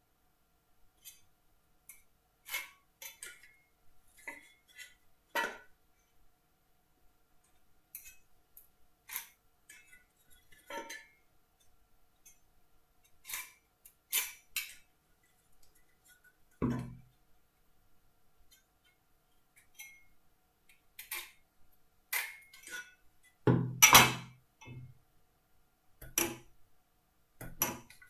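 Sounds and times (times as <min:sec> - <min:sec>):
tools tapping on workbench: 0:16.6 - 0:17.0.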